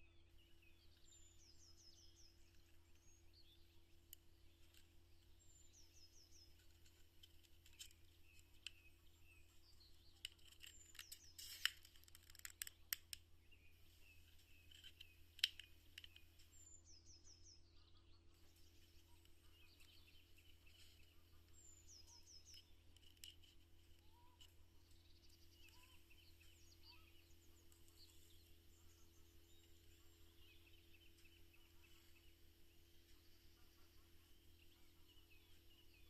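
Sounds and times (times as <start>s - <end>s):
bird chirping trill: 0.0s - 36.0s
small sharp crafting clicks: 10.1s - 13.3s, 14.5s - 16.5s, 22.5s - 24.6s.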